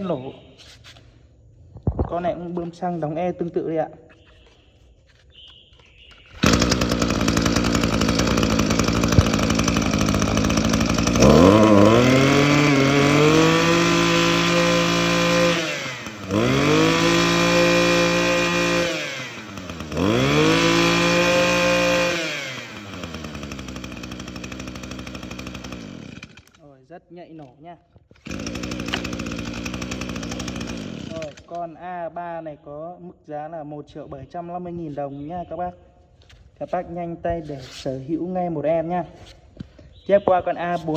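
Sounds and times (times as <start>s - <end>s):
brush cutter engine revving: 6.1s - 26.6s, 28.2s - 31.6s.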